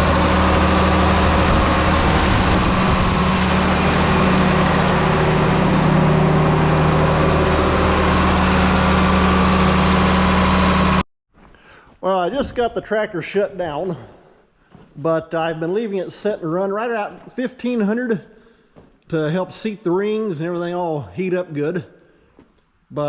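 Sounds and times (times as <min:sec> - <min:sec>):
diesel engine fast idle: 0:00.0 - 0:11.0.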